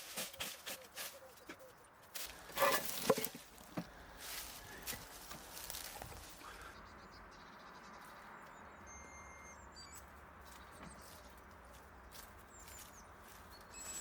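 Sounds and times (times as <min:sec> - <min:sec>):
faint bird chirps: 0:06.4 - 0:11.8.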